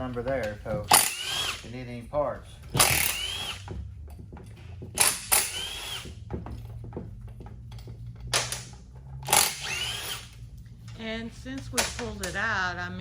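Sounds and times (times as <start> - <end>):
power drill motor whirring: 0.7 - 1.8, 2.7 - 3.9, 4.8 - 6.2, 9.2 - 10.5.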